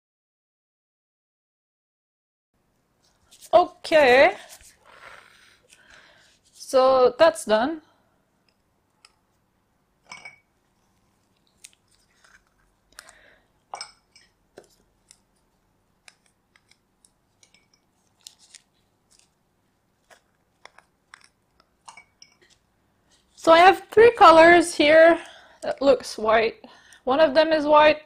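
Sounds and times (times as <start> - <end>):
paint cups clicking and tapping: 10.0 - 10.5, 11.3 - 18.4, 20.0 - 22.6.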